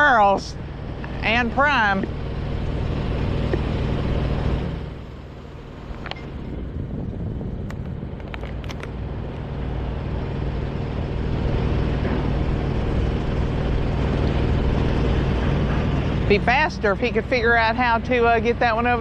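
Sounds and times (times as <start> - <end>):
heavy diesel engine running: 0.0 - 19.0.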